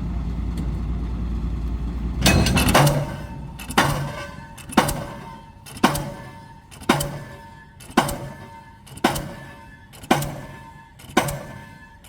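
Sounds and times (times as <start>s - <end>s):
machinery rumble: 0.0s - 5.4s
pile hammer bangs: 2.2s - 6.3s.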